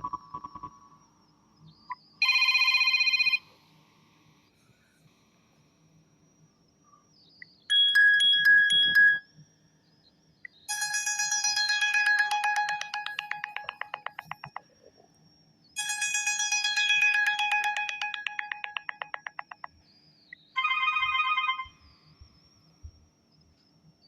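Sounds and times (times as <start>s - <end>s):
phone ringtone chime: 2.2s - 3.4s, 7.7s - 9.2s, 10.7s - 14.7s, 15.8s - 19.7s, 20.6s - 21.8s.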